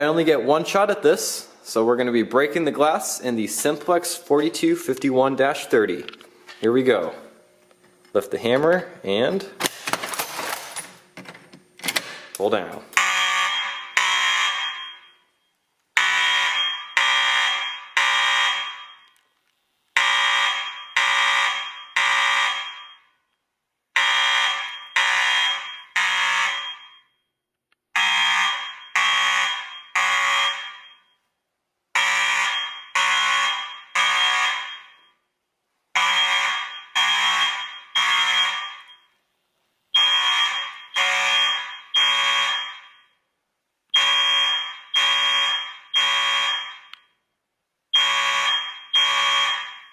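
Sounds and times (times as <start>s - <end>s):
fire alarm buzzy blasts: 13.0s - 19.2s, 20.0s - 23.3s, 23.9s - 31.3s, 31.9s - 39.2s, 39.9s - 49.9s.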